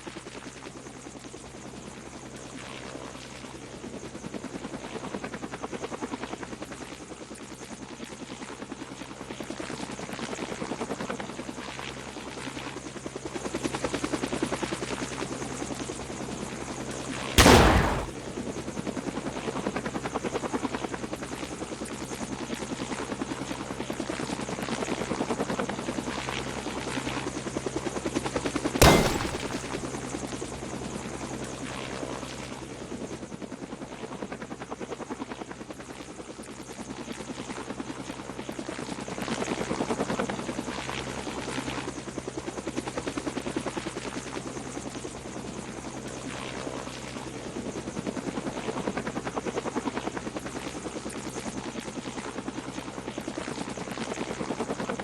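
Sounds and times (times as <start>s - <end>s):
sharp knock: 17.4s - 18.1s, 28.8s - 29.8s.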